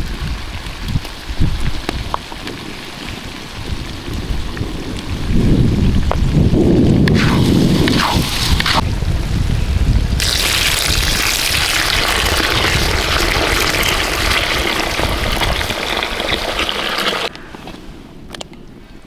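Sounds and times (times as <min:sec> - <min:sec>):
running water rushing: 0:07.1 - 0:08.8, 0:10.2 - 0:17.3.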